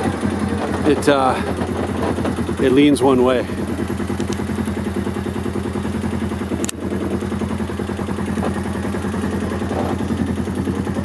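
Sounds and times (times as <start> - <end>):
atv engine running: 0.0 - 11.0
sharp click: 6.6 - 6.8.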